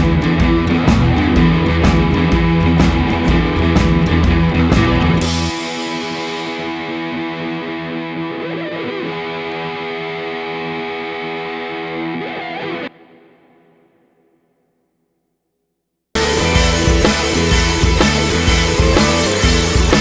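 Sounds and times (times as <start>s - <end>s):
distorted electric guitar chord: 0.0s - 12.2s, 16.2s - 20.0s
rock music: 0.0s - 12.9s, 16.2s - 20.0s.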